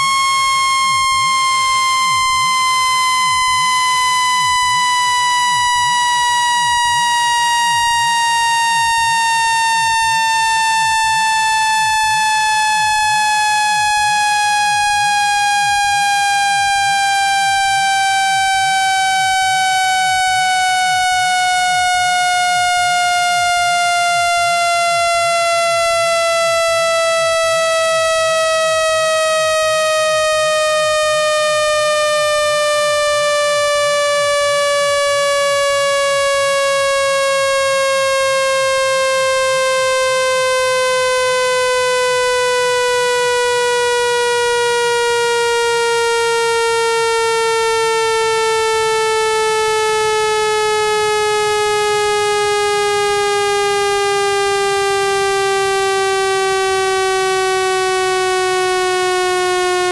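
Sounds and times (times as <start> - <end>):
buzzy tone sliding down: 0.0 - 59.9.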